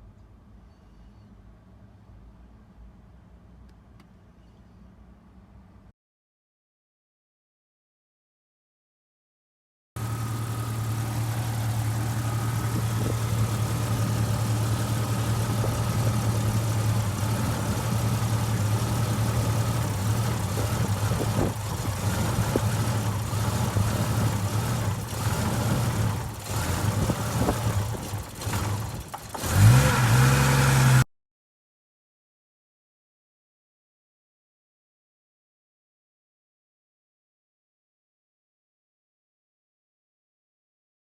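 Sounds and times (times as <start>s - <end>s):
car engine misfiring and revving: 10.0s - 31.1s.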